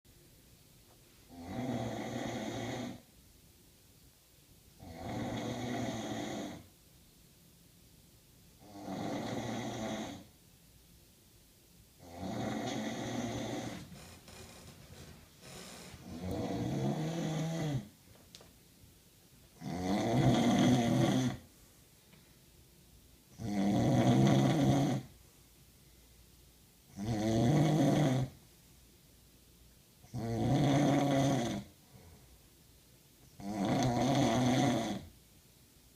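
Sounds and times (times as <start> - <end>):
man snoring loudly: 1.3 - 3.0, 4.8 - 6.6, 8.6 - 10.3, 12.0 - 14.6, 15.4 - 17.9, 19.6 - 21.4, 23.4 - 25.1, 27.0 - 28.4, 30.1 - 31.7, 33.4 - 35.1
quiet breaths: 12.0 - 18.0, 20.0 - 22.7, 24.0 - 26.9, 30.8 - 33.9.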